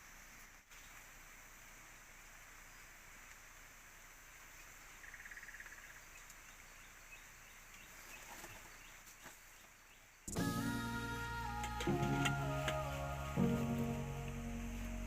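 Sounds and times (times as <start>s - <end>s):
low steady hiss: 0.0s - 15.0s
bird or insect trill: 5.0s - 7.6s.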